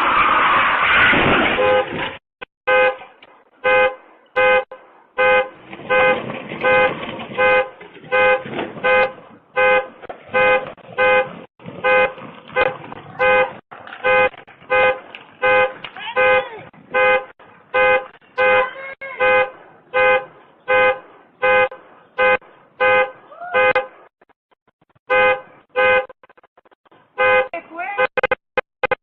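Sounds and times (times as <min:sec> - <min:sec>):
loud crunching crash: 0:00.0 - 0:02.2
car horn blasts: 0:01.6 - 0:02.0, 0:02.7 - 0:03.0, 0:03.6 - 0:24.0, 0:25.1 - 0:26.2, 0:27.2 - 0:28.2.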